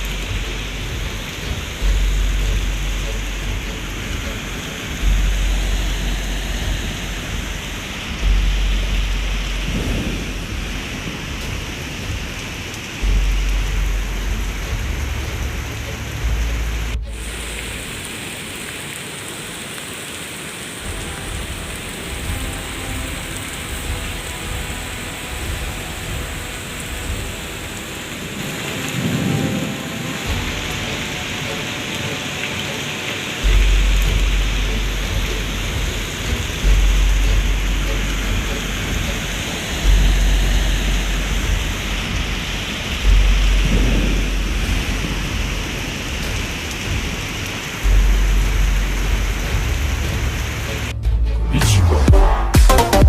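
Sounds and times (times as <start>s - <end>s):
deep low rumbling: 0.0s - 18.0s, 33.4s - 52.5s
heavy rain pouring: 0.0s - 53.0s.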